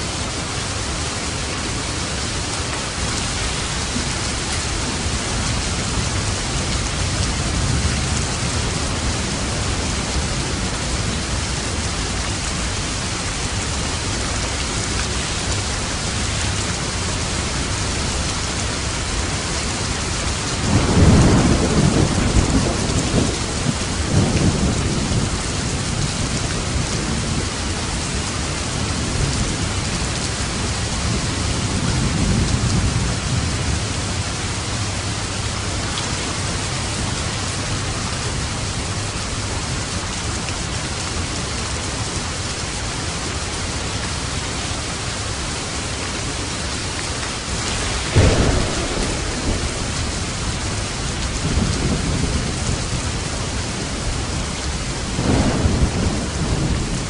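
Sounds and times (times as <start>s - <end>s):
heavy rain falling: 0.0s - 57.0s
thunder rumbling: 14.8s - 39.0s, 44.9s - 57.0s.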